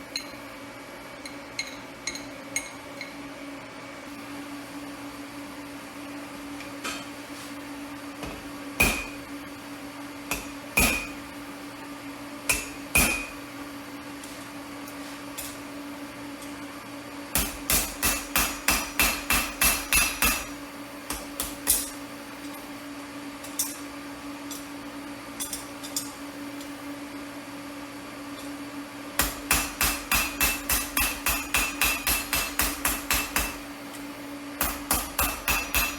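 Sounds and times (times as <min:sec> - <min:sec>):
hammer striking steel on anvil: 0:08.8 - 0:09.2, 0:10.3 - 0:11.2, 0:12.5 - 0:13.4, 0:17.4 - 0:20.5, 0:29.2 - 0:33.6, 0:34.6 - 0:35.9.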